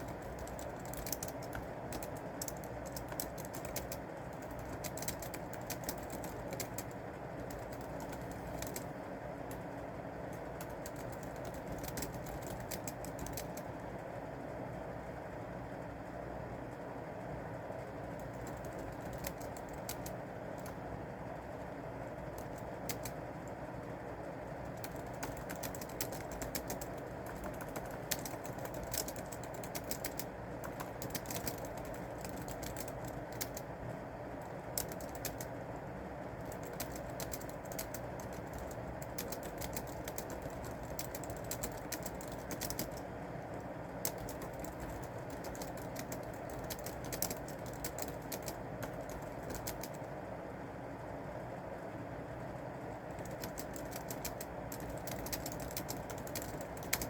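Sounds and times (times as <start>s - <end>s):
keyboard key clicks: 0.0s - 8.9s, 10.6s - 13.7s, 22.4s - 23.2s, 24.7s - 33.7s, 34.8s - 35.5s, 36.4s - 43.1s, 44.0s - 50.0s, 53.1s - 57.0s.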